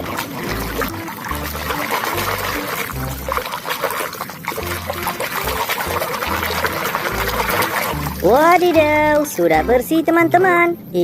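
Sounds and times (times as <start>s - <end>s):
background music with bass line: 0.0s - 3.4s, 4.6s - 9.8s
water pouring and trickling: 0.0s - 9.7s.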